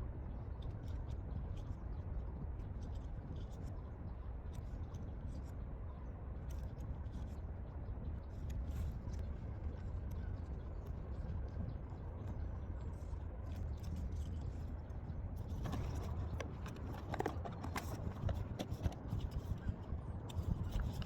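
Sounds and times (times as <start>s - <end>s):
packaging scraping and rustling: 15.6s - 19.1s
sharp clicks and crinkles: 15.6s - 19.5s.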